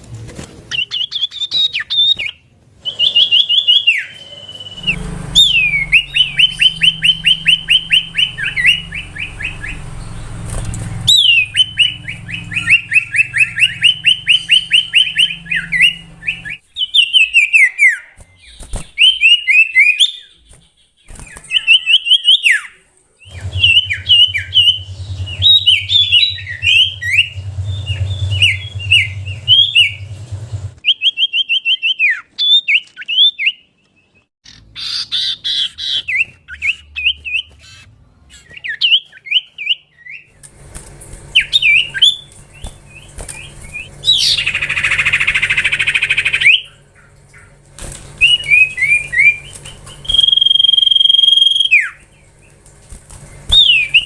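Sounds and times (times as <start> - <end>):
bird singing whistled notes: 0.8 - 10.4, 11.0 - 30.2, 48.2 - 52.0, 53.5 - 54.0
low hum: 4.1 - 16.6, 23.0 - 30.8.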